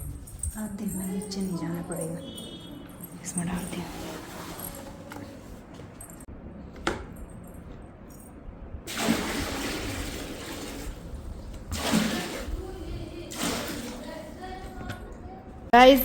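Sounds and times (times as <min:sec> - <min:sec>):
water pouring and splashing: 0:03.6 - 0:05.1, 0:08.9 - 0:14.8.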